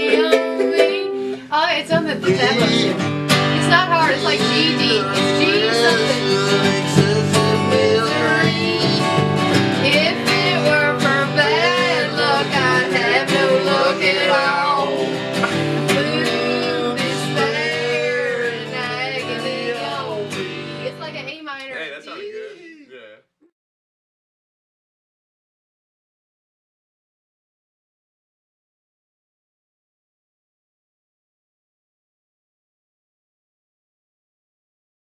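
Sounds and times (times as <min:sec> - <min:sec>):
person singing: 0:00.0 - 0:21.1, 0:21.9 - 0:23.0
acoustic guitar: 0:00.0 - 0:22.7.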